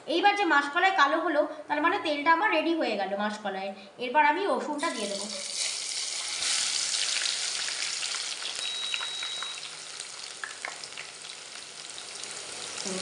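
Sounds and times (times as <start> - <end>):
hot oil sizzling and crackling: 4.8 - 13.0.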